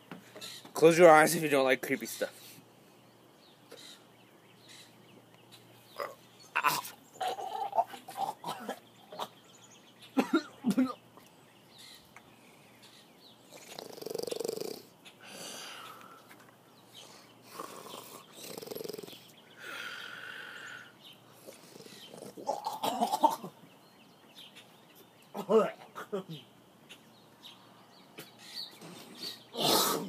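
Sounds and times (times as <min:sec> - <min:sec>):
drawn-out rasping vocal sounds: 0:05.9 - 0:09.4, 0:13.5 - 0:16.3, 0:17.0 - 0:23.6, 0:28.8 - 0:30.0
short coughing grunts: 0:10.2 - 0:11.0, 0:22.5 - 0:23.6.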